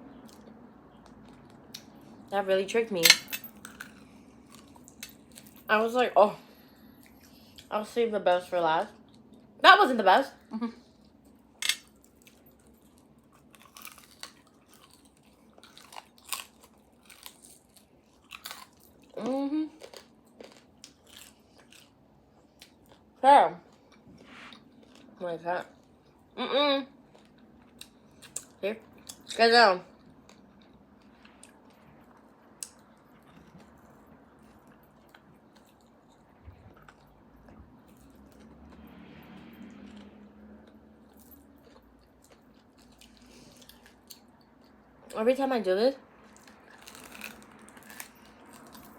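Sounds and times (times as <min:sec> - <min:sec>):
chewing and wet mouth sounds: 0:00.1 - 0:02.3, 0:03.5 - 0:05.7, 0:06.6 - 0:07.7, 0:09.0 - 0:09.6, 0:10.9 - 0:26.4, 0:27.0 - 0:45.2
biting and chewing bone: 0:11.6 - 0:19.2, 0:46.3 - 0:48.9.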